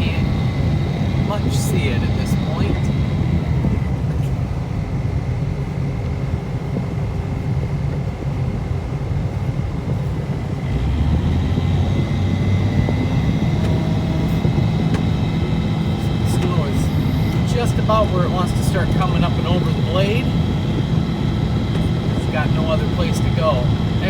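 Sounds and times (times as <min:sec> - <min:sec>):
snowplow engine running: 0:00.0 - 0:24.0.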